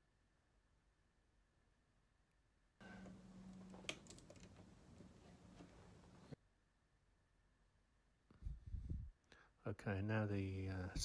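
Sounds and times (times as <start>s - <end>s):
low hum: 2.8s - 6.4s.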